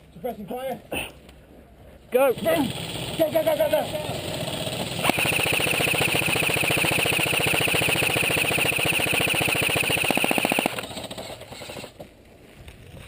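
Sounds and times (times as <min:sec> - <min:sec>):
airsoft gun full-auto rattle: 0:04.3 - 0:12.1
high gearbox whine: 0:05.0 - 0:12.0.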